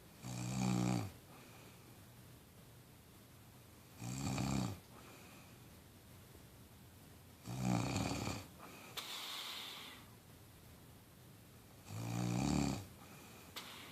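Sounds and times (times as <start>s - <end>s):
person snoring: 0.2s - 1.1s, 4.0s - 4.8s, 7.5s - 8.5s, 11.9s - 12.9s
soft hissing breath: 1.3s - 2.2s, 4.9s - 5.8s, 8.4s - 10.2s, 12.9s - 13.9s.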